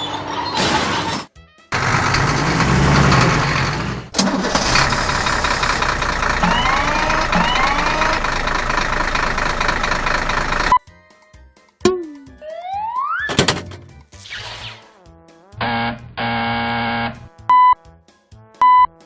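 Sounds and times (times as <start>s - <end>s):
short rising squeaks: 0.0s - 1.3s, 6.3s - 8.3s
vehicle engine running: 1.8s - 10.8s.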